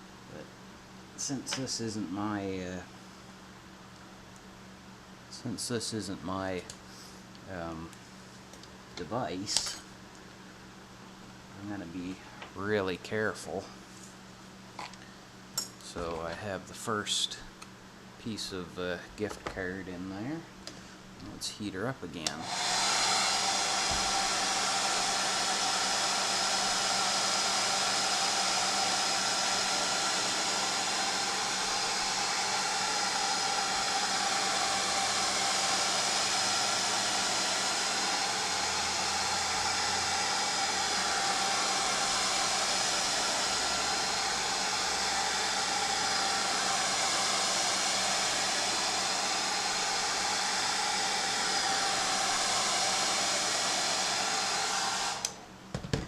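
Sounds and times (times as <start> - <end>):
hot-air blower running: 0.0 - 3.4, 9.0 - 9.8, 21.8 - 56.0.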